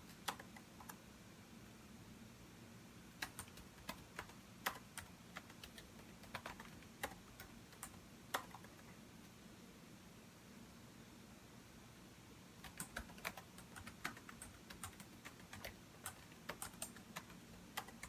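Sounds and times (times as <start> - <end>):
faint low hum: 0.0 - 18.0
keyboard keystroke clicks: 3.2 - 8.8.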